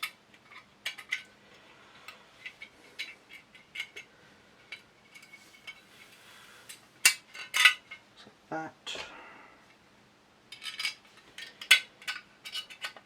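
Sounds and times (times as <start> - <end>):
metal parts clicking: 0.0 - 1.3, 2.4 - 5.8, 10.5 - 13.0.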